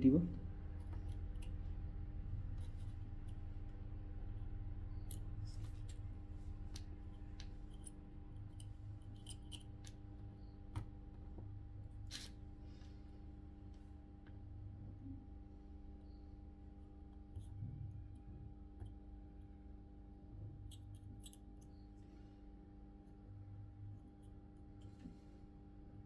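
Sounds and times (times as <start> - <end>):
steady electrical hum: 0.0 - 26.0
light clicks of soldering tools: 0.8 - 1.8, 2.5 - 14.4, 20.3 - 22.2, 23.8 - 25.5.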